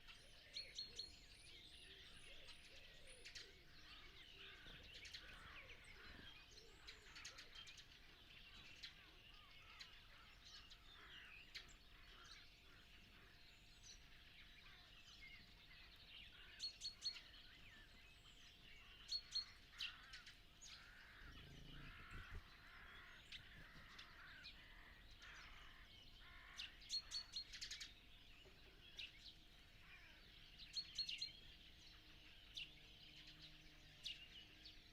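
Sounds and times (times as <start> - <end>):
songbirds chorus: 0.0 - 34.9.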